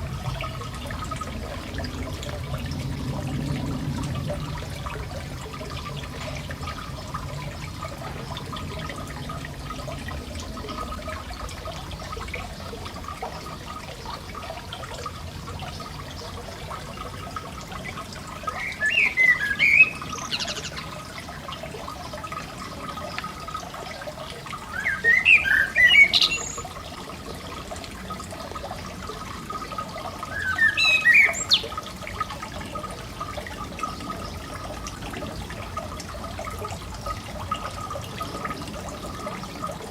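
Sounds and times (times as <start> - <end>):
fountain splashing: 0.0 - 39.9
songbird singing: 17.8 - 23.7, 24.5 - 27.0, 29.5 - 35.4.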